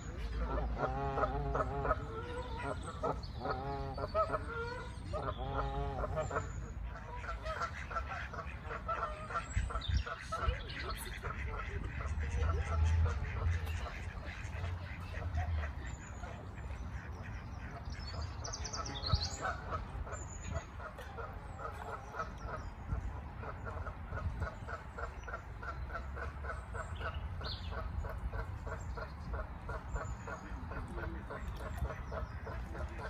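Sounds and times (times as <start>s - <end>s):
waterfowl honking: 0.2s - 22.7s
small birds chirping: 13.3s - 23.0s.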